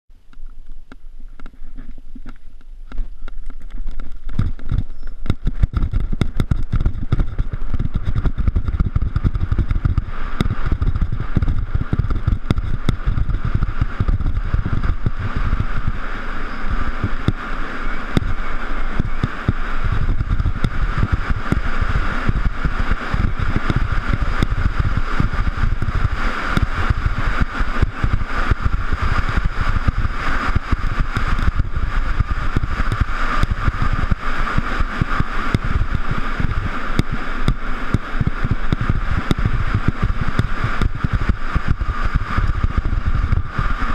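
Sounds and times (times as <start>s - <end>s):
mountain bike rumbling on rough trail: 0.3s - 43.9s.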